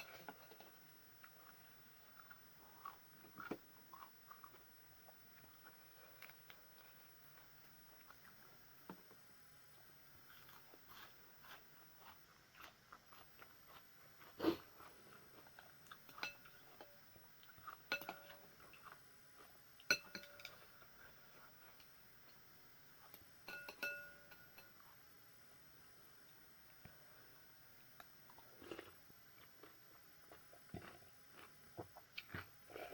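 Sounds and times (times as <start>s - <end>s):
spoon clinking on soup bowl: 17.9s - 18.4s, 19.9s - 20.6s, 23.5s - 24.8s.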